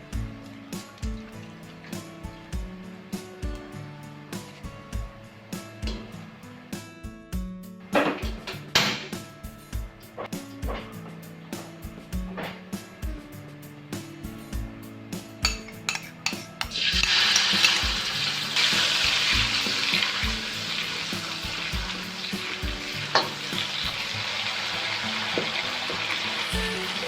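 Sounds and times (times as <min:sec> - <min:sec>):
music with steady beat: 0:00.0 - 0:24.3, 0:25.1 - 0:27.0
food sizzling in hot oil: 0:15.2 - 0:27.0.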